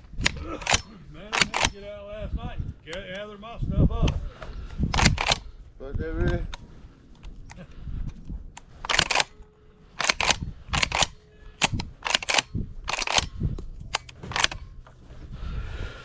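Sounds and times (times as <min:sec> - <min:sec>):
gear clicking and knocking: 0:00.0 - 0:01.8, 0:05.0 - 0:05.4, 0:08.8 - 0:09.3, 0:10.0 - 0:14.8.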